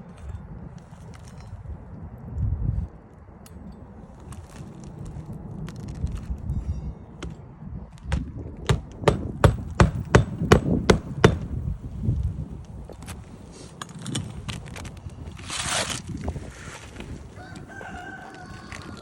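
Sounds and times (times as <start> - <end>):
hammer striking shingle roof: 8.0 - 11.7.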